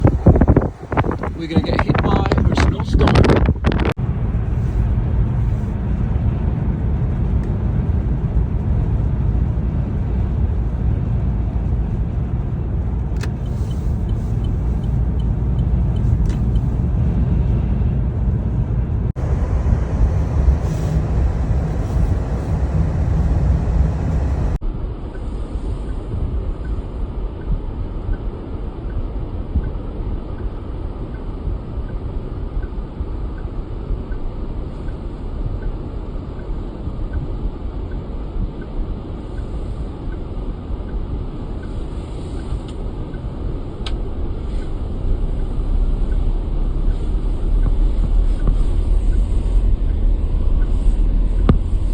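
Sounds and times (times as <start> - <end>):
wind buffeting microphone: 0.0 - 24.6.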